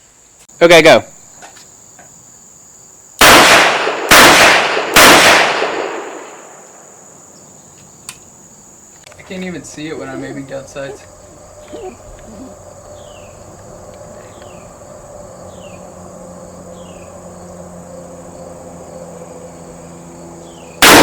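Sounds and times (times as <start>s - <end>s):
insects droning: 0.0s - 21.0s
loud gunshot: 3.2s - 6.6s, 20.8s - 21.0s.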